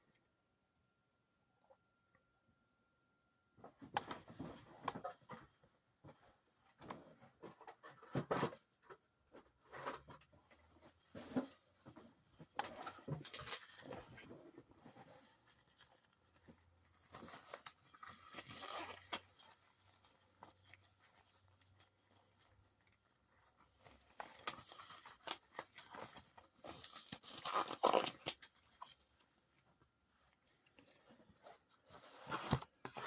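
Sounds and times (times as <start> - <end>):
packaging crinkling and tearing: 17.1 - 21.6, 23.6 - 29.0.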